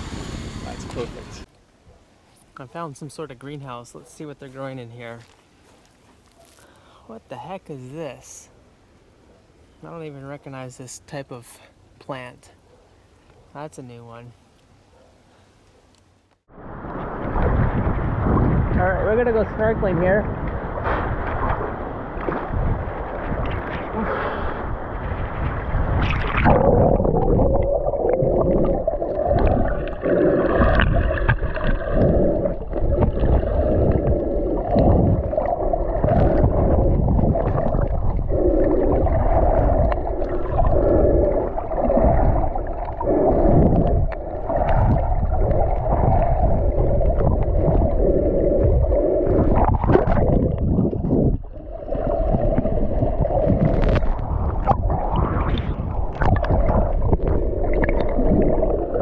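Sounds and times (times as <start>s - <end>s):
water sloshing and gurgling underwater: 16.4s - 59.0s.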